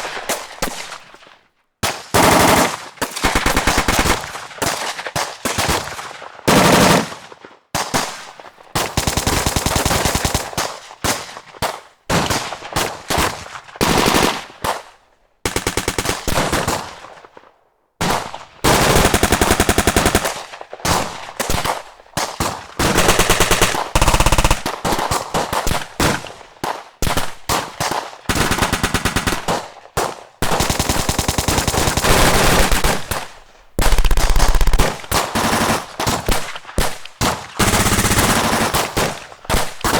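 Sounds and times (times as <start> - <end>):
automatic gunfire bursts: 2.1 - 4.8, 6.5 - 7.2, 13.8 - 14.6, 15.5 - 17.0, 18.0 - 39.9.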